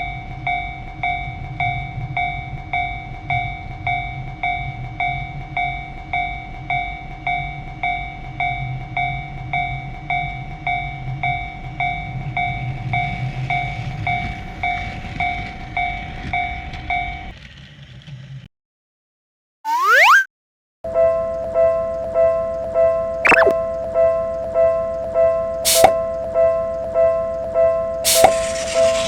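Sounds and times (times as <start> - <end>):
train rumbling past: 11.8 - 18.5.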